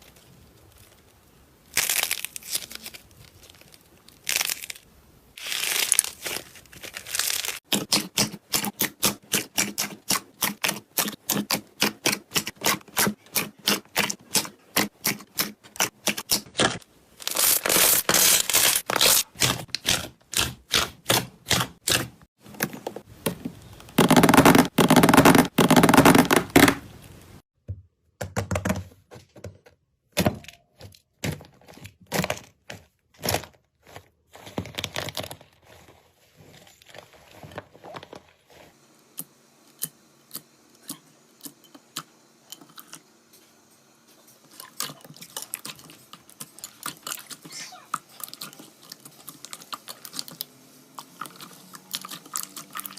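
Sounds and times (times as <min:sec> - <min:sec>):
slime crackling: 0:00.0 - 0:21.6, 0:51.2 - 0:52.9.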